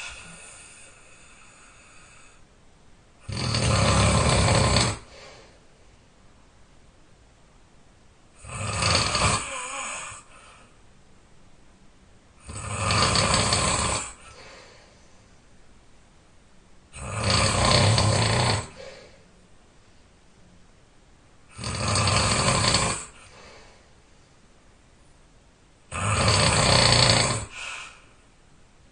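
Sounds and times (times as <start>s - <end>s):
person snoring loudly: 3.2s - 5.2s, 8.4s - 10.6s, 12.4s - 14.6s, 17.0s - 19.0s, 21.5s - 23.6s, 25.9s - 28.0s.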